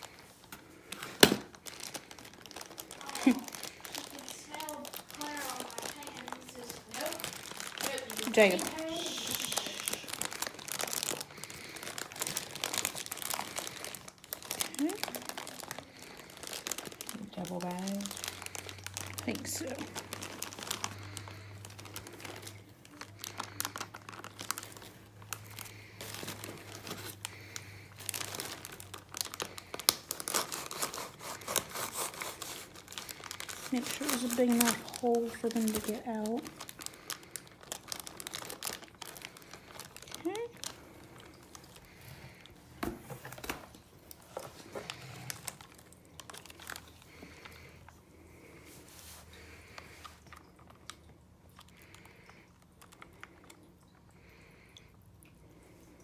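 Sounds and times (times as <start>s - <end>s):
plastic bags crinkling and tearing: 0.0s - 54.9s.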